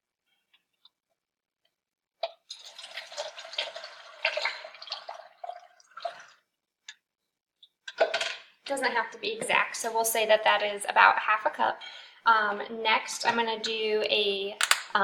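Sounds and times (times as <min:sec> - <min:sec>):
liquid pouring into container: 0:02.5 - 0:06.4.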